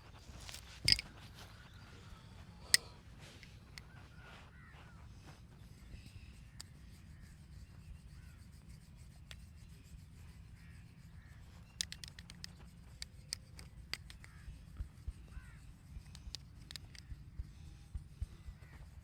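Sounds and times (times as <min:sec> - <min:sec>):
faint bird calls: 0:00.0 - 0:19.0
sharp clicks: 0:11.7 - 0:14.5, 0:16.0 - 0:17.1.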